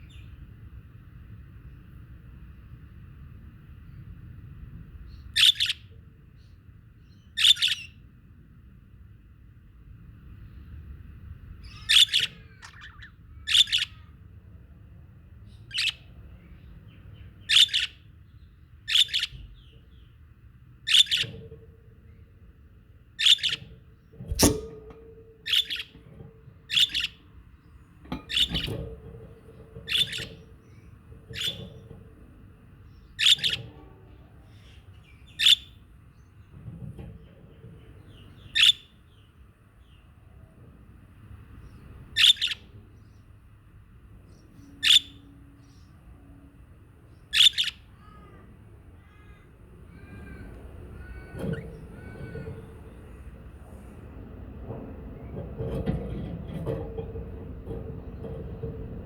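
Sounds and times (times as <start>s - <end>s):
budgerigars chirping: 5.4s - 5.8s, 7.4s - 7.9s, 11.6s - 14.0s, 15.7s - 16.0s, 17.5s - 18.0s, 18.9s - 19.4s, 20.9s - 21.4s, 23.2s - 23.6s, 25.5s - 25.9s, 26.7s - 27.2s, 28.3s - 28.8s, 29.9s - 30.4s, 33.1s - 33.7s, 42.2s - 42.7s, 47.3s - 47.8s.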